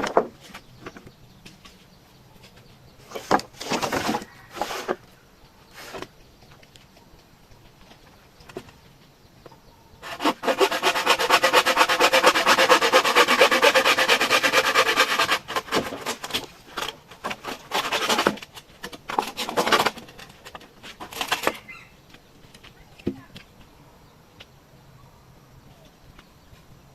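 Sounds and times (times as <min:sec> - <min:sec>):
hand tool rasping bamboo: 0:10.0 - 0:21.7.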